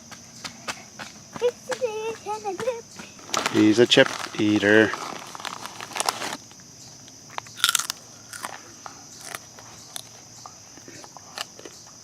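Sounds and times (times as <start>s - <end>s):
insects droning: 0.0s - 12.0s
chips being crunched and chewed: 3.3s - 6.4s, 7.3s - 8.6s, 9.2s - 10.2s.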